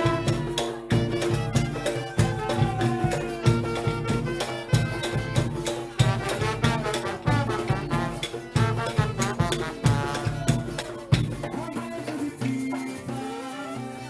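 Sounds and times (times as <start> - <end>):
latin music with percussion: 0.0 - 14.0
low thumping beat: 0.9 - 5.4.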